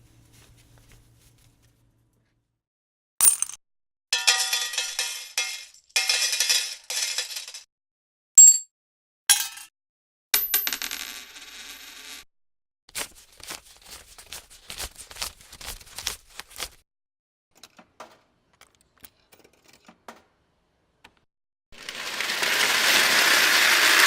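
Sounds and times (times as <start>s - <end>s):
coins pouring: 3.2s - 3.6s, 4.2s - 7.6s, 10.4s - 12.2s, 21.8s - 24.0s
banknotes crinkling and flicking: 12.9s - 16.8s.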